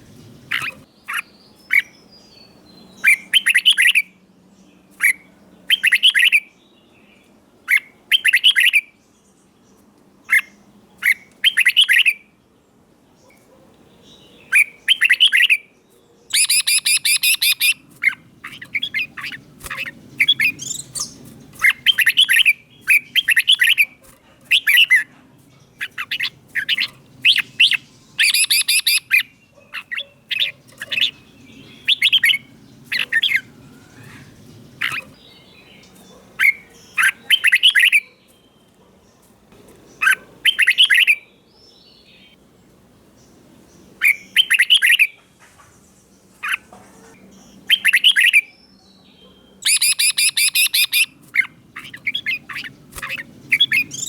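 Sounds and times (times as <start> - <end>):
rapid rattling bird notes: 0.0 - 1.9, 16.3 - 37.9, 49.7 - 54.0
bird singing whistled phrases: 16.3 - 17.8, 25.8 - 29.3, 31.7 - 32.4, 40.5 - 41.3, 44.1 - 45.2, 49.6 - 51.1.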